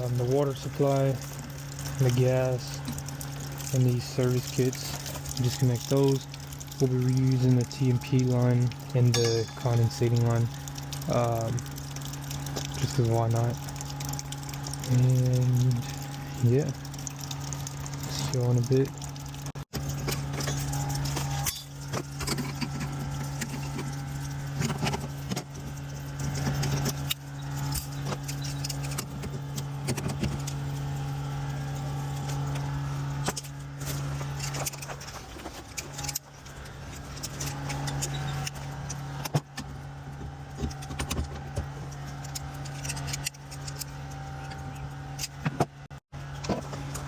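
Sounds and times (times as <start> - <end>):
steady low hum: 0.0 - 47.0.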